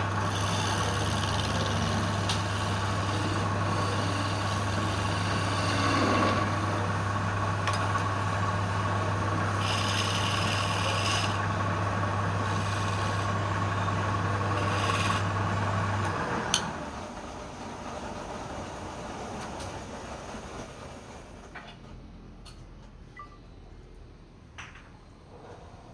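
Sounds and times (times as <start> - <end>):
tool rasping on spinning wood: 0.0 - 7.2, 7.9 - 16.7
wood lathe motor humming: 0.0 - 16.9.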